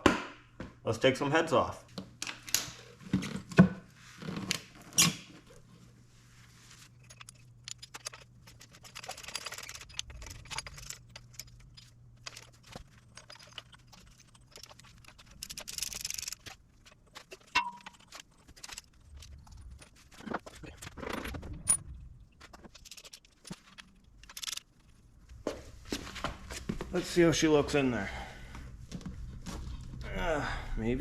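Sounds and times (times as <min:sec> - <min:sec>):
metal hand tools clinking: 0:17.5 - 0:18.3.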